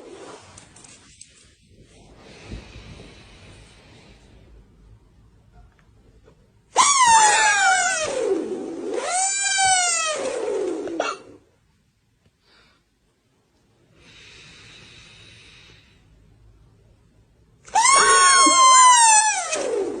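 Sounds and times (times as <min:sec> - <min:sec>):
breathing hiss: 0:01.6 - 0:05.0, 0:13.9 - 0:16.6
high-pitched snoring squeal: 0:17.7 - 0:20.0.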